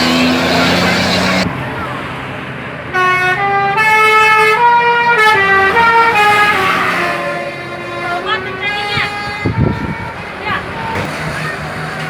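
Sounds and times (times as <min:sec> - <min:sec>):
multi-tone bus horn tune: 0:00.0 - 0:01.5, 0:02.9 - 0:12.0
running vehicle noise: 0:00.0 - 0:12.0.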